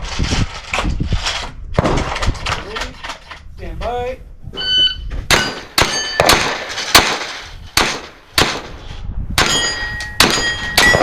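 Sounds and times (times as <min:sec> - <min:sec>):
rifle gunshots: 0:01.8 - 0:02.4, 0:05.3 - 0:08.8, 0:09.4 - 0:11.0
steel targets ringing: 0:04.6 - 0:06.3, 0:09.4 - 0:11.0.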